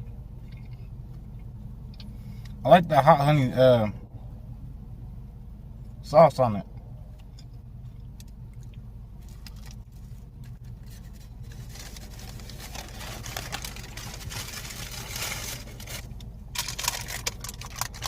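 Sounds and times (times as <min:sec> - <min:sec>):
low background hum: 0:00.0 - 0:18.0
paper wrapping rustling: 0:10.8 - 0:18.0.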